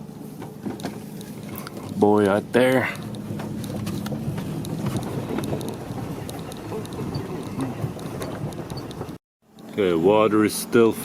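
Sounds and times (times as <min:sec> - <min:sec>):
vehicle engine rumbling: 0:00.0 - 0:11.0
wind on microphone: 0:03.7 - 0:09.2.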